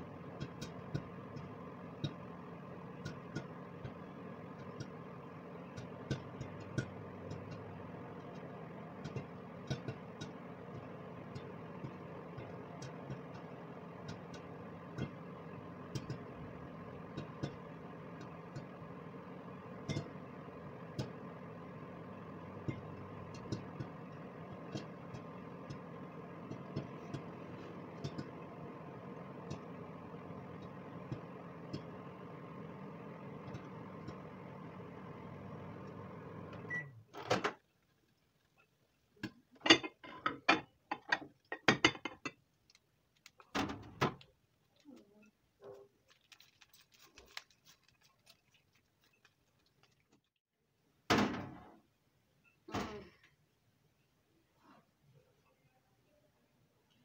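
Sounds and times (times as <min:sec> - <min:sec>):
popcorn popping: 0:00.0 - 0:36.7, 0:45.7 - 0:50.3
microwave oven humming: 0:00.0 - 0:37.6.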